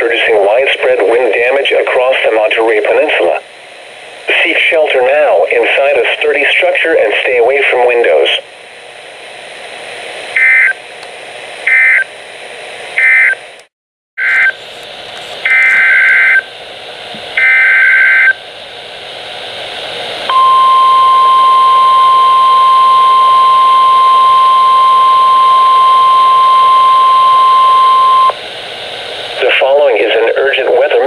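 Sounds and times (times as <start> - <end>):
radio hiss: 0.0 - 3.6, 4.2 - 8.5, 27.4 - 31.0.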